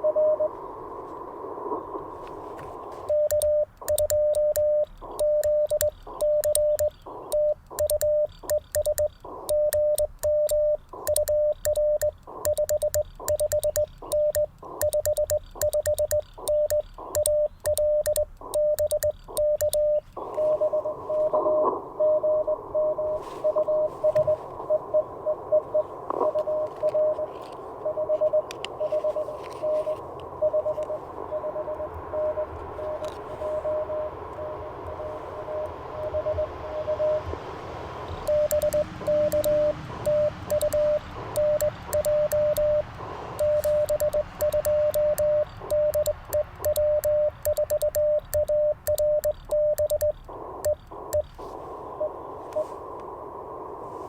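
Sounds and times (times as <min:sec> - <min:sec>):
morse code sidetone beeps: 0:00.0 - 0:00.6, 0:03.0 - 0:37.3, 0:38.1 - 0:52.8
faint morse signal: 0:00.0 - 0:54.0
radio static hiss: 0:00.0 - 0:54.0
telegraph key clicks: 0:03.1 - 0:20.3, 0:38.2 - 0:51.4.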